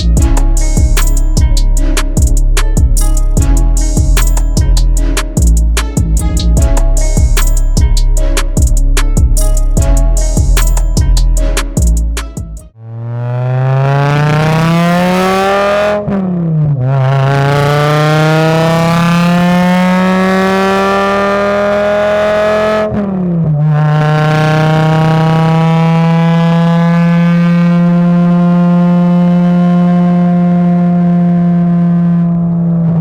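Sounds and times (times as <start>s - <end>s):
racecar engine revving through gears: 13.0s - 32.9s.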